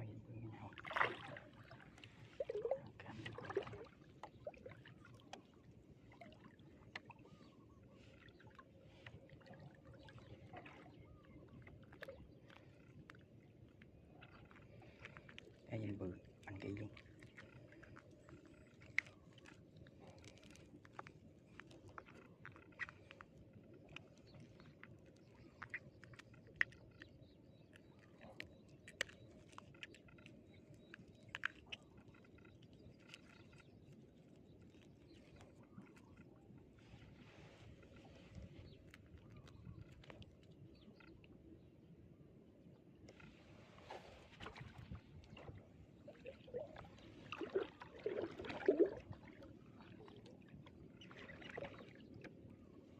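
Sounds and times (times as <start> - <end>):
water gurgling and splashing: 0.0 - 12.8, 43.3 - 52.7.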